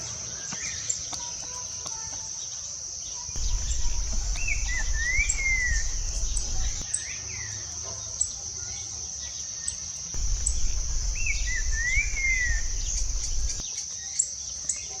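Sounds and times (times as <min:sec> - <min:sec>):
high insect buzz: 0:03.4 - 0:06.9, 0:10.2 - 0:13.6
bird singing whistled notes: 0:03.4 - 0:07.4, 0:10.2 - 0:14.2.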